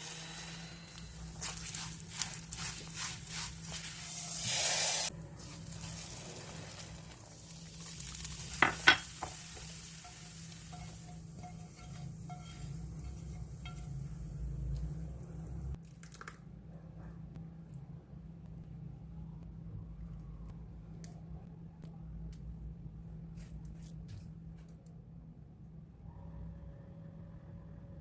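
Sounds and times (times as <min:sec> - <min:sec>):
food sizzling in hot oil: 0:00.0 - 0:14.6
loud hiss: 0:04.4 - 0:05.1
utensil knocking on pot: 0:08.6 - 0:09.4
spoon scraping pot: 0:10.0 - 0:14.1.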